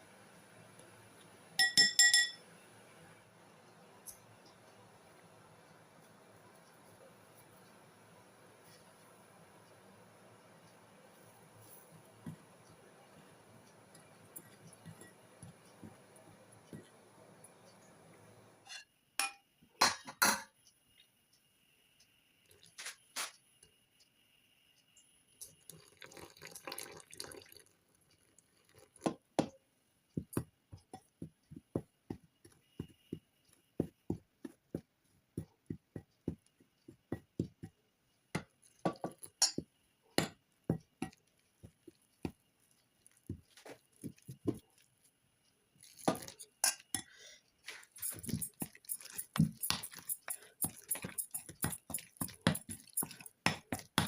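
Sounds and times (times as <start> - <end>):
kitchen utensils clinking: 1.6 - 2.4, 38.9 - 39.6, 45.9 - 47.1, 47.7 - 54.0.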